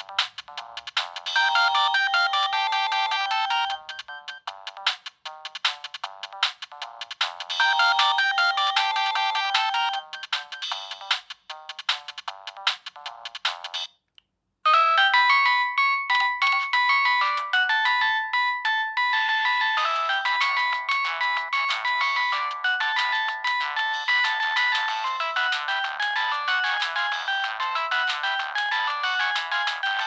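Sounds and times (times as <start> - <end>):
polyphonic phone ringtone: 1.2 - 4.5, 7.5 - 10.9, 14.7 - 30.0.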